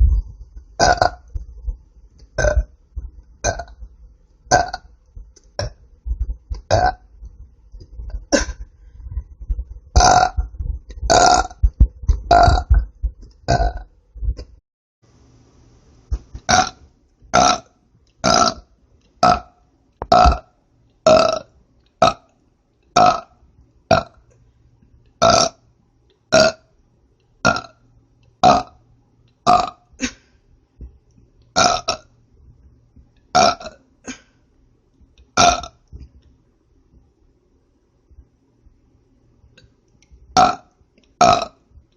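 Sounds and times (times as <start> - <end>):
woman burping: 8.3 - 8.7.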